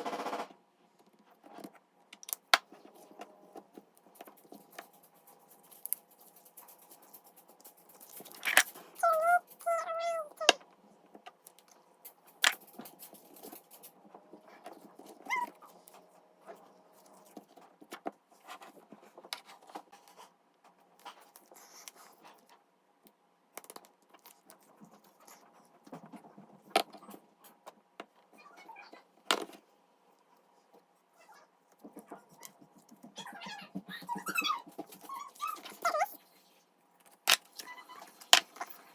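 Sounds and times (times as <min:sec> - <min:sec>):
dog: 0:09.0 - 0:10.5, 0:14.5 - 0:16.0, 0:33.2 - 0:36.2
dog whining: 0:09.0 - 0:10.5, 0:15.1 - 0:15.8, 0:33.2 - 0:36.2.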